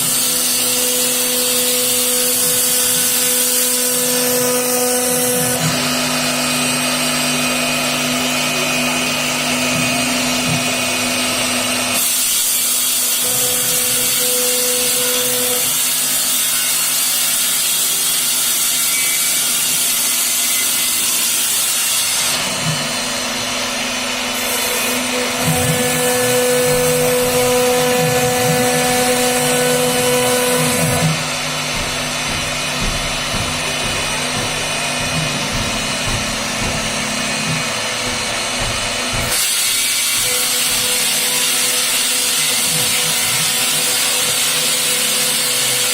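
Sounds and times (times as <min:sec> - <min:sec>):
router spindle running: 0:00.0 - 0:21.4, 0:22.0 - 0:45.9
router bit cutting wood: 0:00.0 - 0:45.9.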